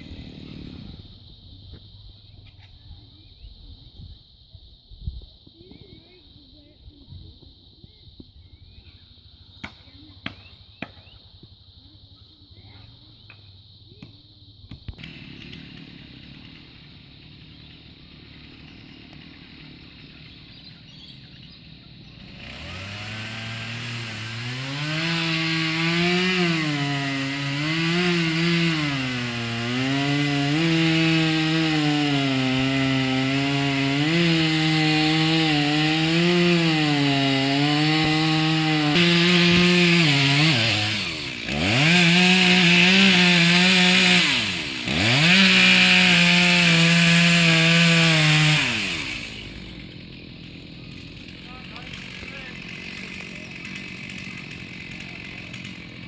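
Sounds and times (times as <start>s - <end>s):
chainsaw cutting wood: 0.0s - 1.2s, 14.9s - 56.0s.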